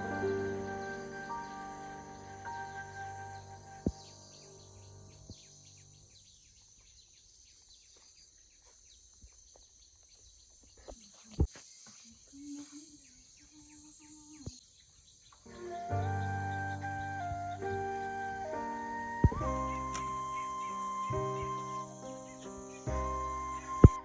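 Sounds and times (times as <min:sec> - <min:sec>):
background music: 0:00.0 - 0:04.9, 0:15.5 - 0:24.0
background hiss: 0:00.0 - 0:24.0
crickets chirping: 0:00.0 - 0:24.0.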